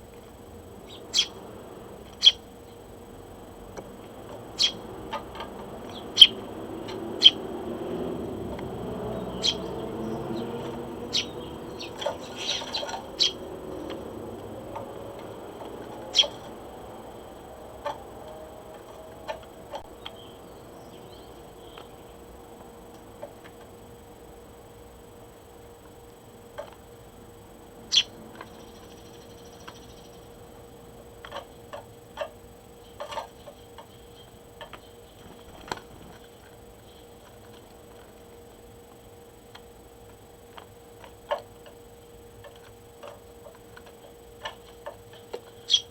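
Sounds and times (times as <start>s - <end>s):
low steady hum: 0.0s - 45.9s
sparrow chirping: 0.8s - 2.8s, 4.3s - 16.6s, 18.9s - 22.2s, 27.8s - 30.5s, 45.5s - 45.9s.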